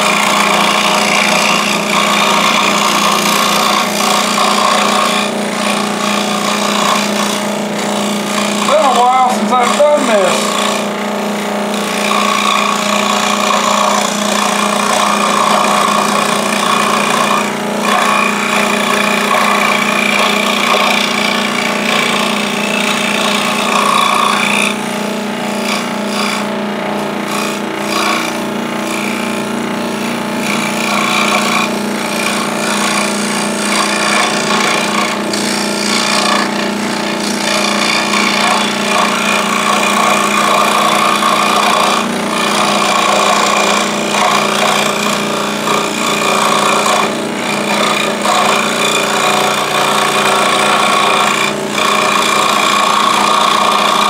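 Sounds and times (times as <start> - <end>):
scroll saw cutting wood: 0.0 - 54.0.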